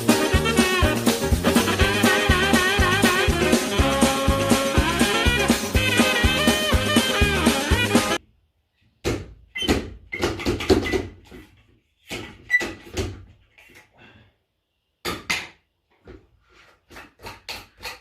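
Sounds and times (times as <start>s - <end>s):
plastic parts knocking and clattering: 10.0s - 13.8s.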